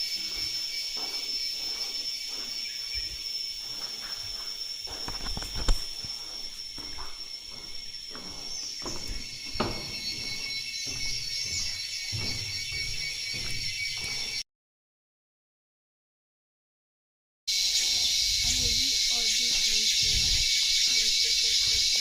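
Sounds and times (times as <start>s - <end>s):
insects buzzing: 0.0s - 14.4s, 17.5s - 22.0s
low thumps: 4.9s - 14.4s.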